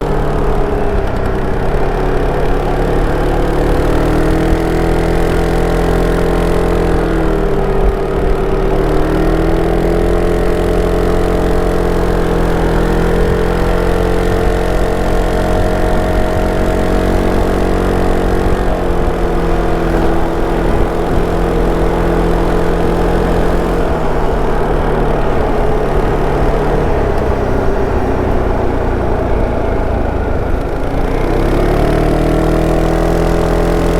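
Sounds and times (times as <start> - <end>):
scooter engine revving: 0.0 - 33.9.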